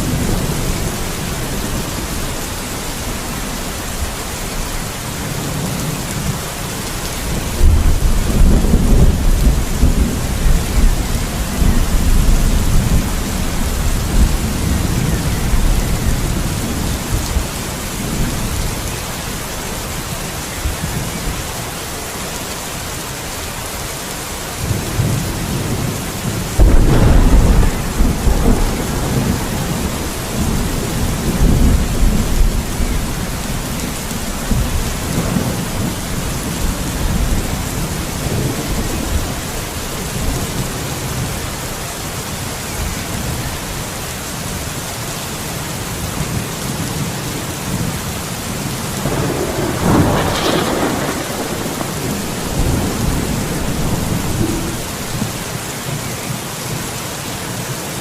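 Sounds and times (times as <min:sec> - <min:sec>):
thunder rumbling: 0:00.0 - 0:19.6, 0:24.6 - 0:41.4, 0:46.6 - 0:55.6
heavy rain: 0:00.0 - 0:58.0.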